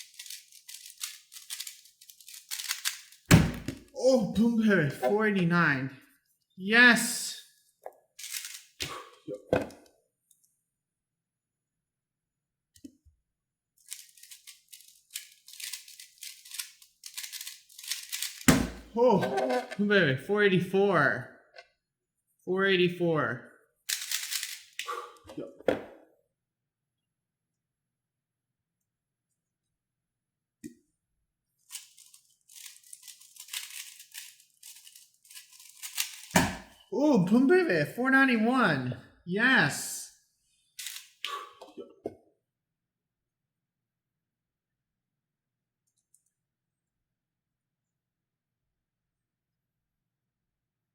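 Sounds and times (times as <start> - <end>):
puzzle cube clicking: 0.0 - 3.2
puzzle cube clicking and rattling: 0.0 - 3.3, 8.2 - 8.8, 13.8 - 18.5, 23.9 - 24.8, 31.6 - 36.4, 40.8 - 41.2.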